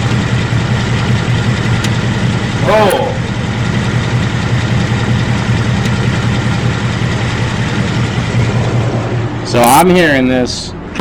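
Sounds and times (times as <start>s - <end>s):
faint engine tick: 0.0s - 8.4s
car engine idling: 0.0s - 11.0s.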